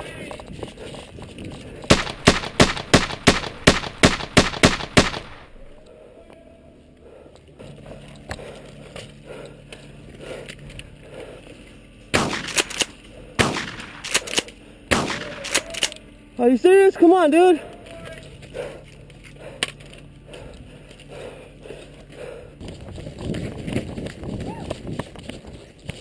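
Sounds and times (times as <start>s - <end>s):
airsoft gun shots: 1.9s - 5.8s, 12.1s - 15.8s.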